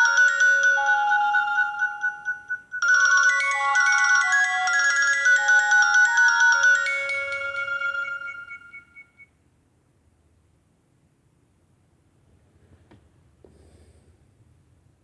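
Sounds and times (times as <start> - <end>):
polyphonic ringtone melody: 0.0 - 9.2.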